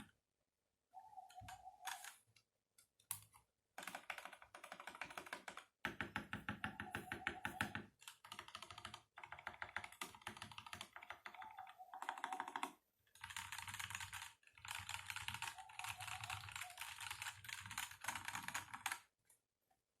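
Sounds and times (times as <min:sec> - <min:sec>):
mechanical keyboard typing: 0:03.1 - 0:19.1.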